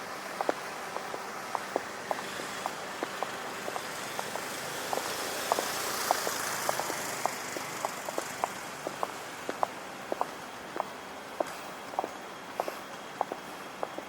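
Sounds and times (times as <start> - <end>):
vehicle passing: 0.0 - 10.7
footsteps on hard pavement: 0.0 - 14.0.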